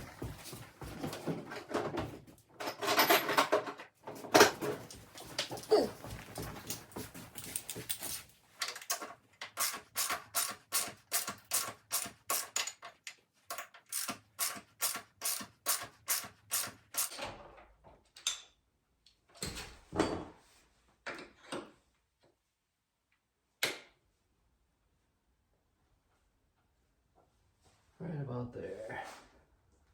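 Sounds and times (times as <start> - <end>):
hand ratchet clicking: 13.5 - 17.1.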